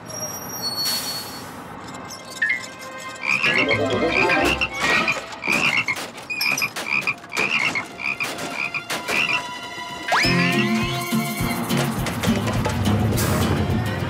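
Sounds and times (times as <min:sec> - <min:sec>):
knocks and clicks: 0:02.3 - 0:09.6, 0:10.7 - 0:13.5
cartoon frogs croaking: 0:02.4 - 0:06.0, 0:06.6 - 0:09.4.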